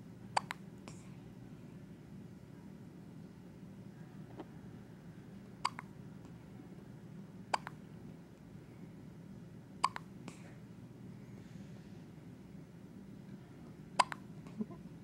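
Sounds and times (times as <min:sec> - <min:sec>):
baby hiccuping: 0:05.6 - 0:05.9, 0:14.0 - 0:14.2.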